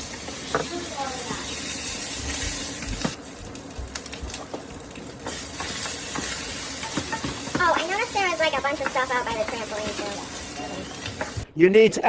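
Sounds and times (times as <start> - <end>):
vegetables sizzling in a pan: 0.0 - 11.4
spoon scraping a pan: 5.2 - 11.4.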